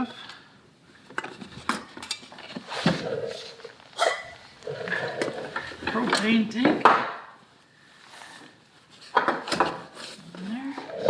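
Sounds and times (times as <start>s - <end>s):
sharp clatters and scrapes: 1.0s - 6.4s.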